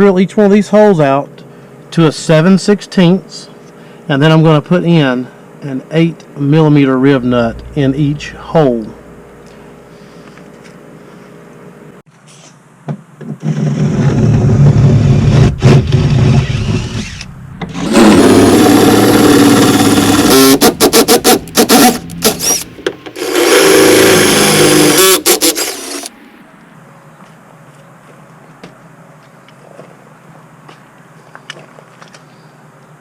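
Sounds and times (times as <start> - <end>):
power drill running: 15.9 - 26.1.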